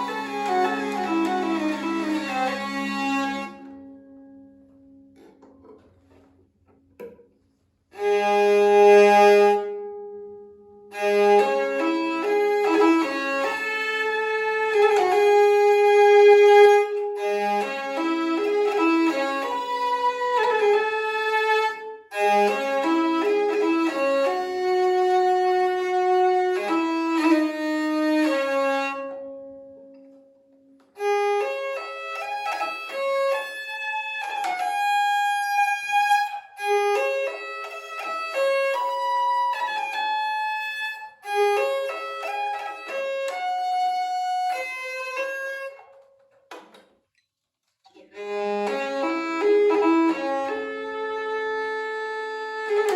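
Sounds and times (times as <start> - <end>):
hurdy-gurdy melody over drone: 0.0 - 3.9, 10.9 - 29.0, 48.2 - 52.9.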